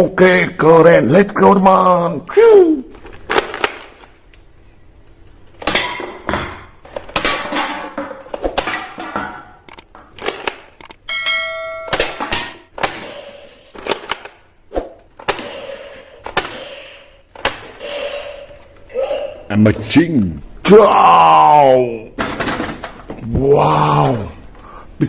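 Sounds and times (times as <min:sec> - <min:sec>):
short ringing chime: 0:11.1 - 0:12.0.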